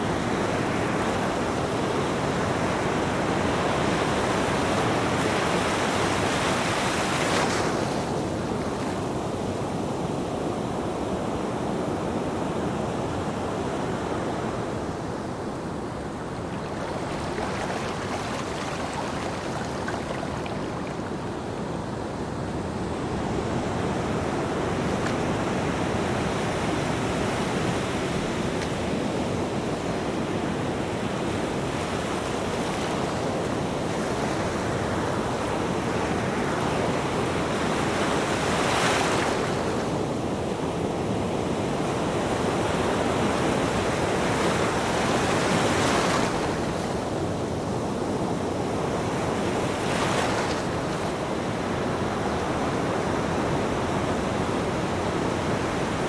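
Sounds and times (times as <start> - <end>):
ocean waves breaking: 13.6 - 40.2, 40.8 - 56.0.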